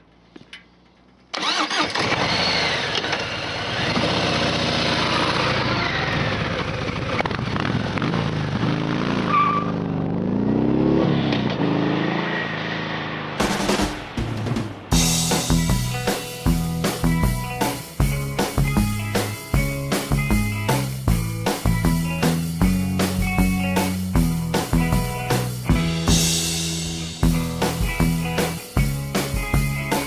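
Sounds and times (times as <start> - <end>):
motorcycle engine starting: 0.5 - 15.8
motorcycle engine revving: 1.4 - 15.6.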